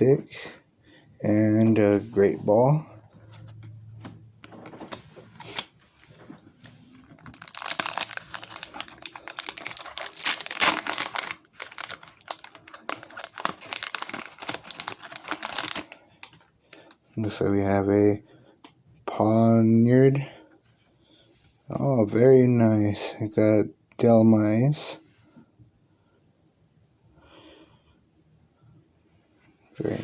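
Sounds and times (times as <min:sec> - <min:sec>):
foil wrapper crinkling and tearing: 0:06.6 - 0:17.0.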